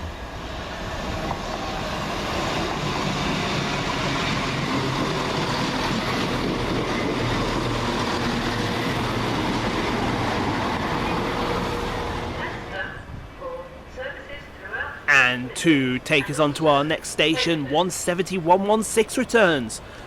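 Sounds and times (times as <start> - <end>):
diesel train engine and wheels: 0.0 - 20.0.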